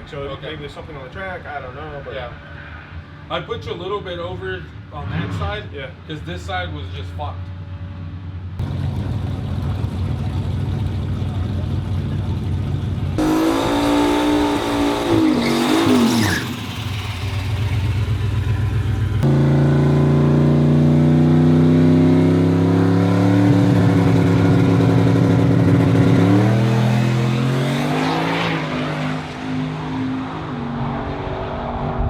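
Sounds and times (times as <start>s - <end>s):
drag car engines revving: 8.6s - 32.0s.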